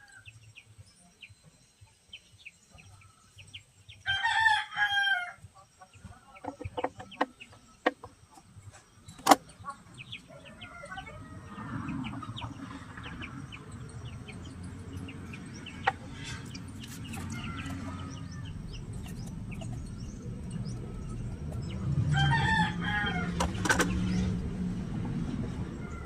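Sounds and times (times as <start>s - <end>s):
rooster crowing: 4.0s - 5.4s, 22.0s - 23.7s
steady low hum: 5.5s - 26.0s
sharp clicks or knocks: 23.4s - 24.1s.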